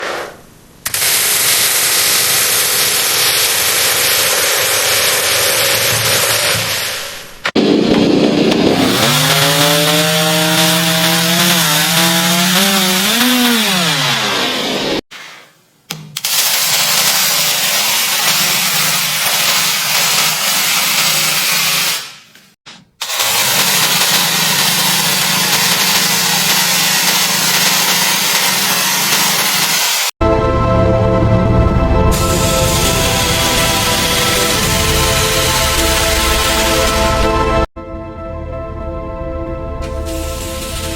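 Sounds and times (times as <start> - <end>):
small chainsaw running: 0.9 - 7.0, 8.7 - 15.0, 23.0 - 30.1.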